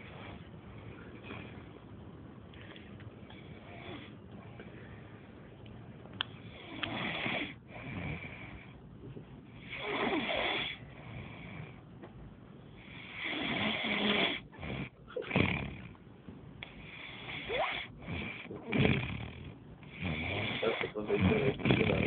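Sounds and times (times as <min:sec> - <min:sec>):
quiet breathing: 0:00.0 - 0:16.0, 0:16.6 - 0:22.0
person snoring: 0:09.6 - 0:11.6, 0:12.8 - 0:15.9, 0:16.8 - 0:22.0.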